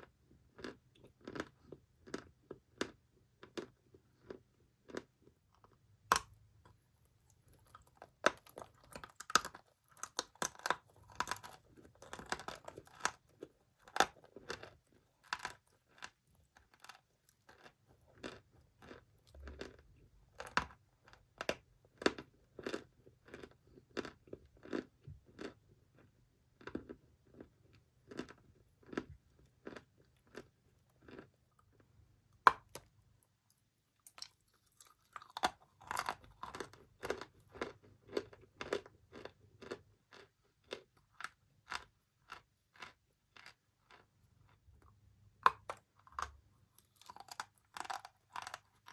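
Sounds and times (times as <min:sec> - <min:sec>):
chalk being chewed: 0:33.5 - 0:48.9.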